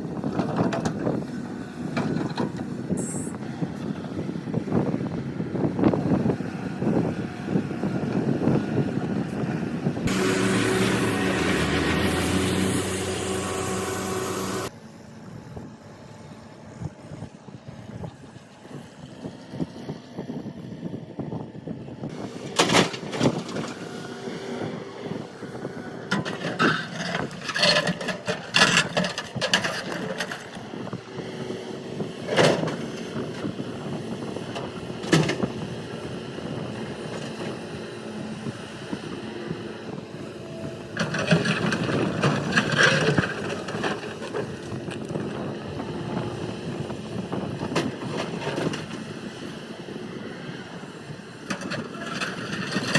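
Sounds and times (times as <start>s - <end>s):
excavator engine running: 10.0s - 14.7s, 22.1s - 52.9s.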